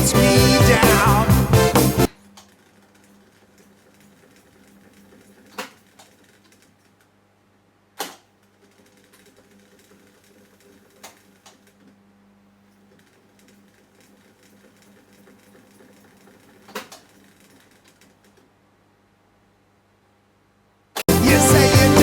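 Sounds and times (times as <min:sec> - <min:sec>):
music from tape recorder: 0:00.0 - 0:02.1, 0:21.1 - 0:22.0.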